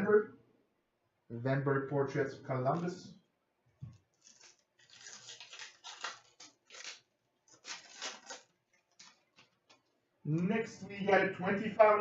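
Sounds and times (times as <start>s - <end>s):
trading cards rustling and sliding: 4.1s - 9.8s.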